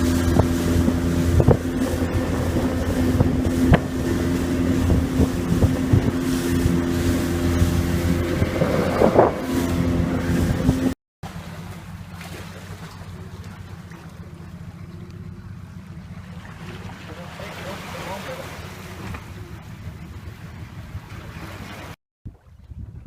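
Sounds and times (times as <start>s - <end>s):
wind on microphone: 0.0s - 11.0s, 19.0s - 23.0s
low rumble: 0.0s - 21.6s
motorboat engine running: 0.0s - 23.0s.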